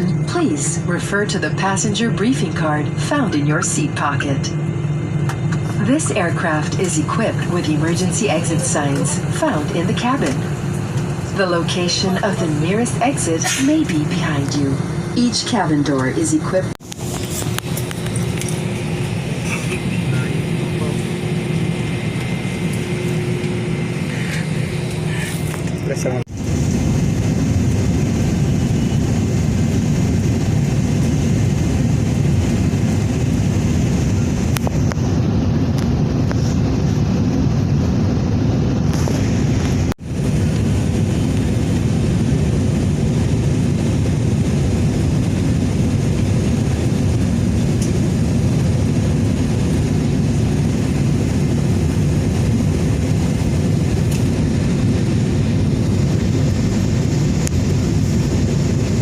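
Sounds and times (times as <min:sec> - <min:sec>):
airliner engine rumble in cabin: 0:00.0 - 0:59.0.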